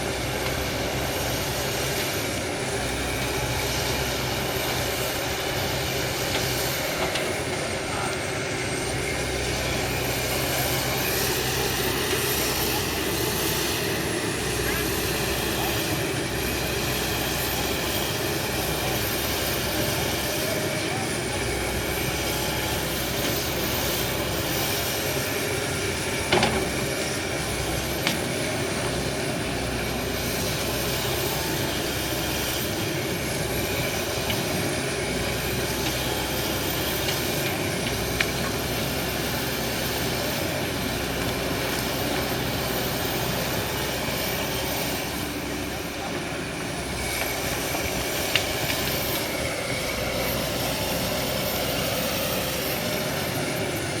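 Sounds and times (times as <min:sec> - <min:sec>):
excavator engine running: 0:00.0 - 0:54.0.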